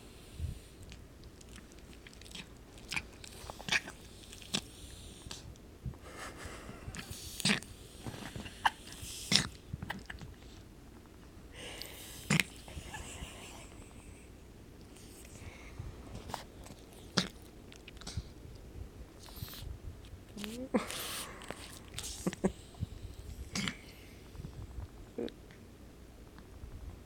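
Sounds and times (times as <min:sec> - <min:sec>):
dog breathing noises: 0:00.0 - 0:01.0, 0:01.6 - 0:10.7, 0:11.5 - 0:18.4, 0:19.2 - 0:24.9
dog chewing and crunching food: 0:00.6 - 0:05.6, 0:07.0 - 0:10.7, 0:14.8 - 0:25.0.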